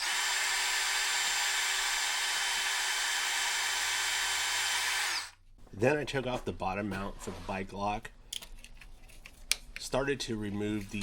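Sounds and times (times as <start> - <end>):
power tool whining: 0.0 - 5.4.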